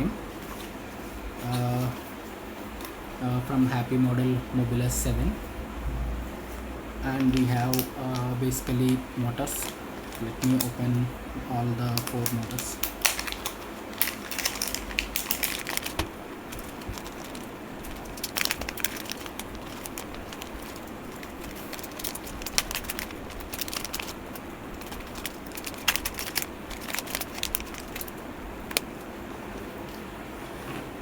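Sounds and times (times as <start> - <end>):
steady background hiss: 0.0 - 31.0
plastic packaging crinkling: 7.0 - 29.1.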